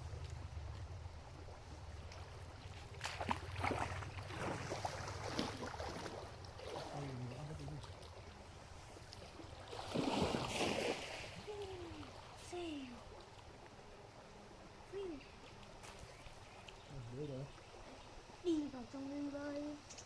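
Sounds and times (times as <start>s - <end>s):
water splashing in stream: 0.0s - 19.8s.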